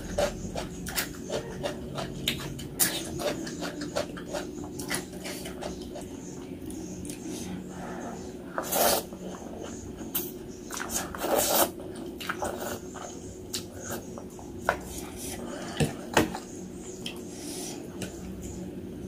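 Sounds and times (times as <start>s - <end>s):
chewing: 0.0s - 7.3s.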